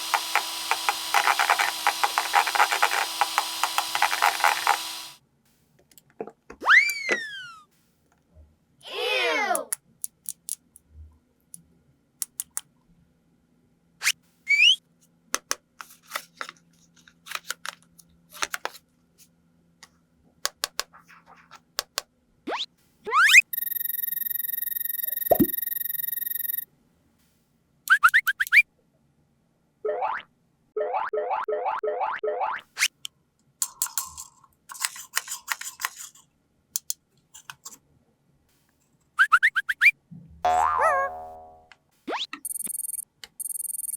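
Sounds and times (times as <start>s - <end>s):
plastic toy pieces clicking: 9.8s - 10.9s, 33.6s - 36.2s
cartoon boing effect: 29.9s - 32.6s, 40.4s - 42.2s.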